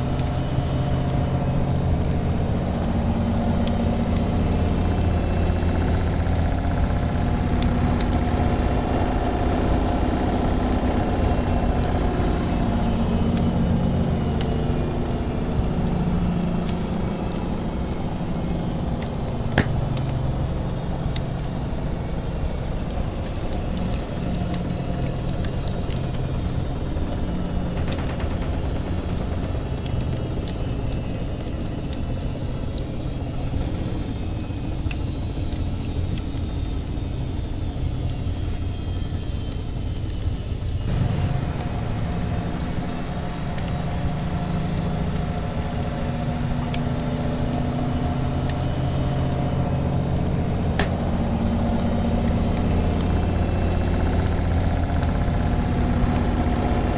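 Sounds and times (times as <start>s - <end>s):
washing machine humming: 0.0s - 56.9s
wood fire crackling: 0.0s - 56.9s.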